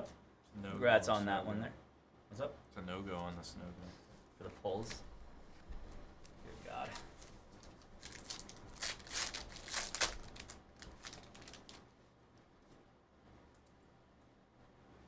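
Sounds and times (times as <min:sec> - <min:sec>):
wrapper tearing and crinkling: 0:06.2 - 0:11.8.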